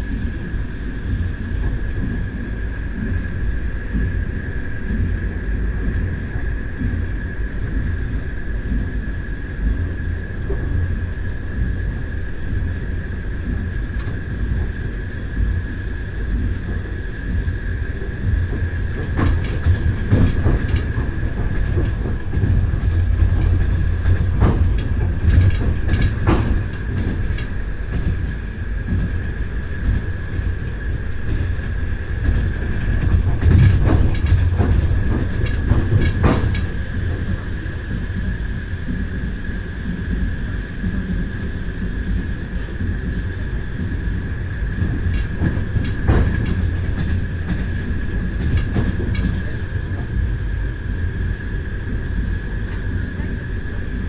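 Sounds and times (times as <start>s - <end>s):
train wheels clacking: 0.0s - 54.0s.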